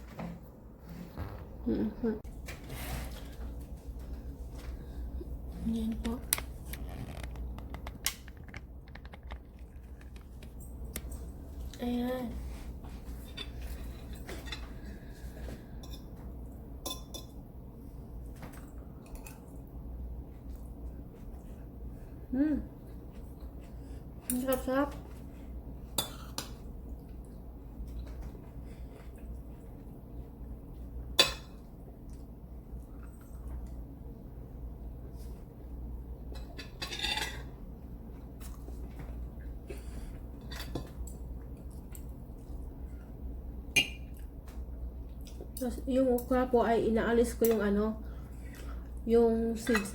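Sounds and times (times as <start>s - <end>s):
cutlery clinking on a plate: 36.4s - 37.5s.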